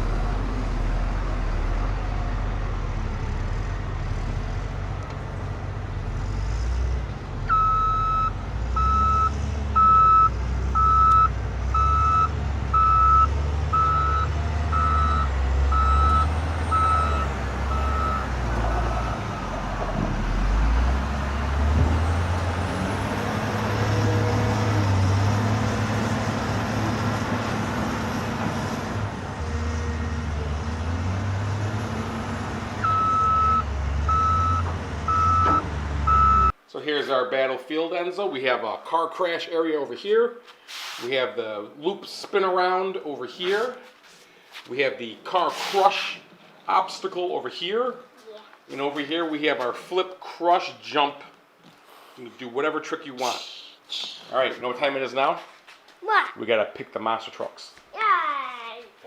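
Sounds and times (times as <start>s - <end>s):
electronic reversing beeper: 7.5s - 18.3s.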